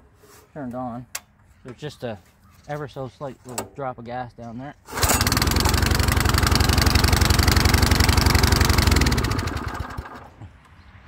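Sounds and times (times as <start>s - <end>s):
small engine running: 4.9s - 10.4s.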